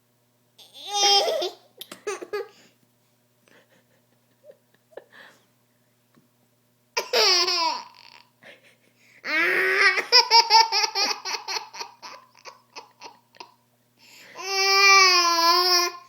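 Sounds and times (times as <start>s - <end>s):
baby laughing: 7.0s - 8.3s, 9.3s - 13.5s.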